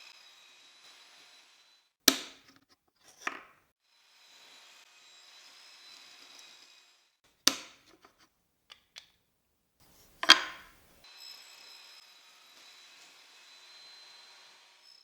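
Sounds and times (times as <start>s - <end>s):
wooden pieces knocking on workbench: 2.1s - 3.6s, 7.5s - 9.1s, 10.0s - 11.0s.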